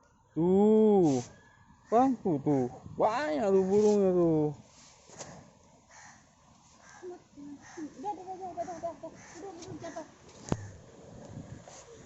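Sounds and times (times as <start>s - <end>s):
faint bird calls: 5.1s - 10.9s.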